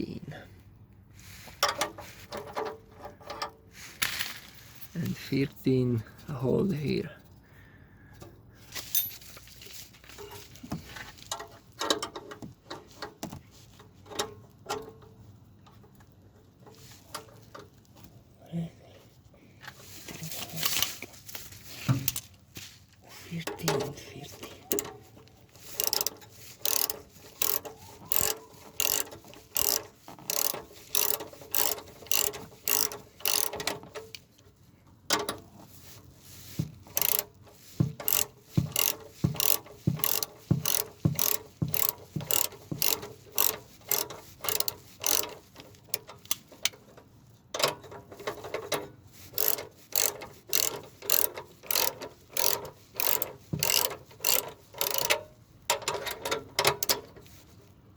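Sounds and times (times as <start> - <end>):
ratchet wrench clicking: 24.7 - 24.9, 25.6 - 34.2, 36.6 - 46.8, 47.6 - 57.2.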